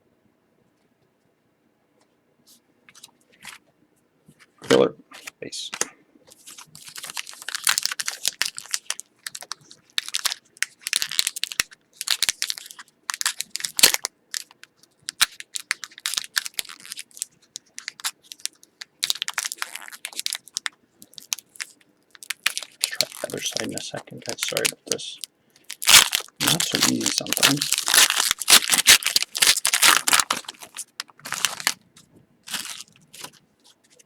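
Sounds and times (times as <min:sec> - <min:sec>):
card pack wrapper crinkling: 0:06.3 - 0:31.8, 0:32.4 - 0:34.0.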